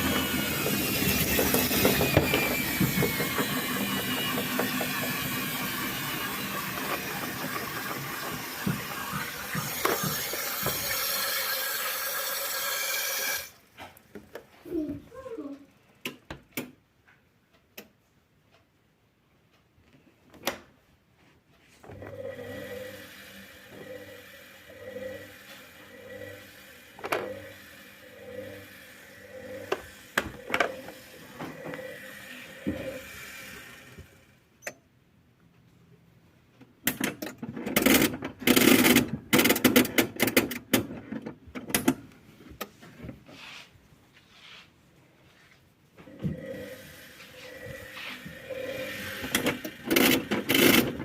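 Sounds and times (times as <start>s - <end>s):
loud rattling and knocking: 0.0s - 11.1s
washing machine motor humming: 0.0s - 14.9s, 21.9s - 34.3s, 46.0s - 51.0s.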